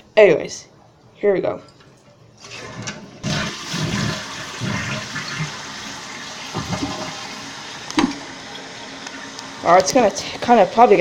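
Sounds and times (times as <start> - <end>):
toilet flushing: 2.4 - 11.0.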